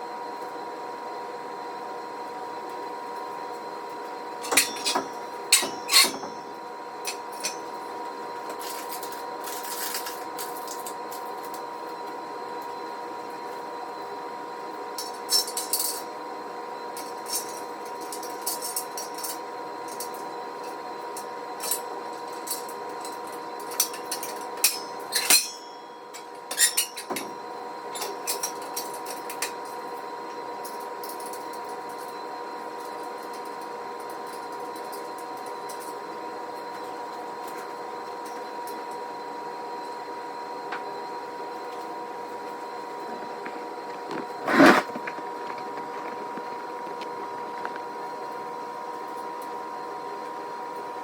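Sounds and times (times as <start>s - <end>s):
steady hum: 42.9s - 48.0s.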